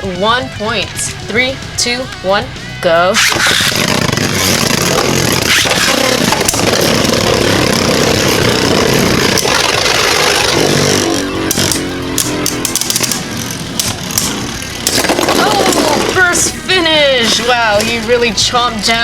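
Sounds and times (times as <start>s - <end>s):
sharp clicks and clatter: 3.2s - 16.6s
spinning tops clashing: 3.2s - 18.2s
spinning tops whirring and grinding: 3.2s - 19.0s.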